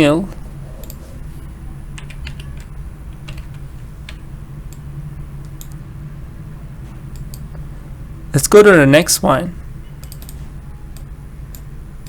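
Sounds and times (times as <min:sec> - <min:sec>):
steady low hum: 0:00.0 - 0:12.0
computer keyboard clicks: 0:02.0 - 0:04.8, 0:10.0 - 0:11.7.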